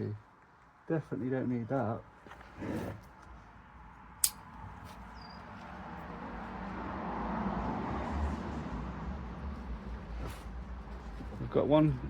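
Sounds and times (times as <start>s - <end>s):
cutters snipping a branch: 4.2s - 4.6s.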